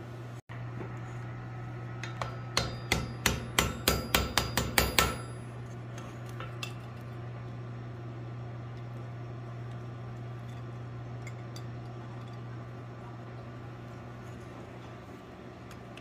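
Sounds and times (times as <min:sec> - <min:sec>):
hammer ringing on anvil: 0:02.2 - 0:05.6.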